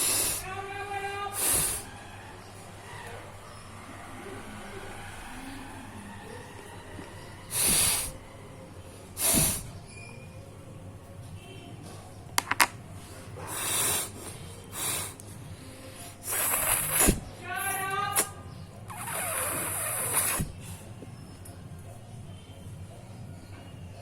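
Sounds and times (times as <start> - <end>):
person blowing nose: 0.0 - 0.4, 1.4 - 1.9, 7.5 - 8.2, 9.2 - 9.7, 13.4 - 15.2, 16.2 - 17.3, 18.9 - 20.7.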